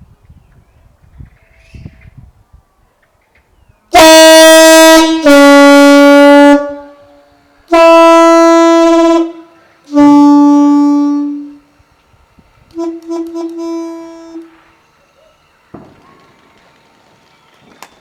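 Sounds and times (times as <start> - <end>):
locomotive air horn blasts: 3.9 - 11.9, 12.6 - 15.0.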